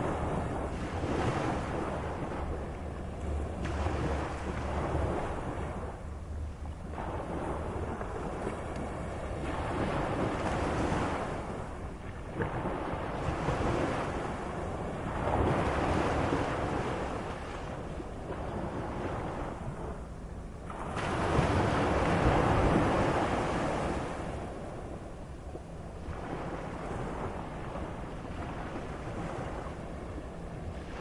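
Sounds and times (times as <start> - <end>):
sea waves breaking: 0.0 - 31.0.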